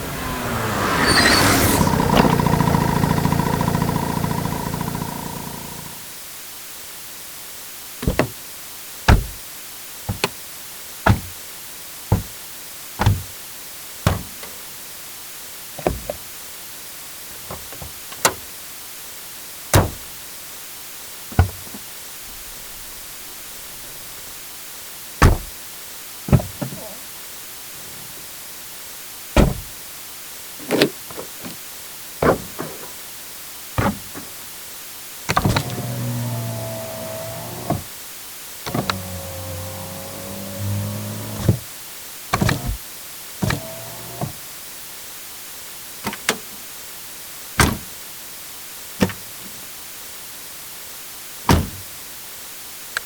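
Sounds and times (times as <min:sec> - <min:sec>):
car door thudding shut: 0:00.0 - 0:06.0, 0:08.0 - 0:08.4, 0:09.1 - 0:09.4, 0:10.1 - 0:10.3, 0:11.1 - 0:11.4, 0:12.1 - 0:12.4, 0:13.0 - 0:13.3, 0:14.1 - 0:14.5, 0:19.8 - 0:20.1, 0:21.3 - 0:21.7, 0:25.2 - 0:25.6, 0:29.4 - 0:29.8, 0:32.2 - 0:33.0, 0:33.8 - 0:34.3, 0:35.3 - 0:37.9, 0:47.6 - 0:47.9, 0:51.5 - 0:51.9
electric motor hum: 0:00.0 - 0:06.0, 0:35.4 - 0:37.9, 0:38.7 - 0:41.6, 0:43.4 - 0:44.4
short motor whir: 0:00.0 - 0:06.0, 0:35.4 - 0:37.9, 0:38.7 - 0:41.6, 0:43.4 - 0:44.4.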